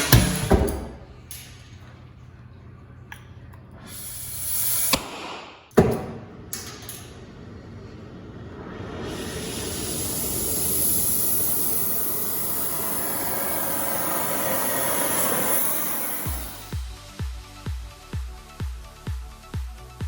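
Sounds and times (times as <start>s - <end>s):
loud steady hiss: 3.8s - 5.6s, 6.6s - 17.2s
kick drum: 16.8s - 20.0s.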